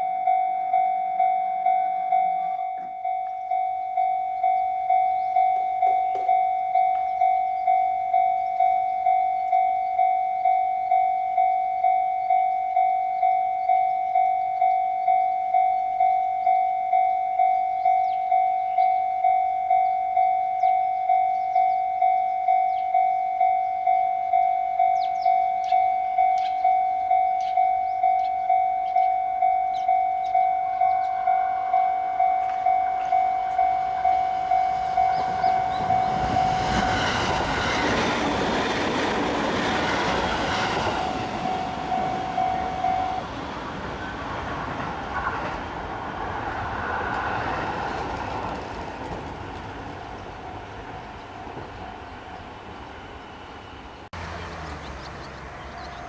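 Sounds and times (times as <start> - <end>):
level crossing bell ringing: 0.0 - 37.3, 38.6 - 43.3
train rumble: 24.4 - 56.0
wheels clattering over rail joints: 31.6 - 51.9.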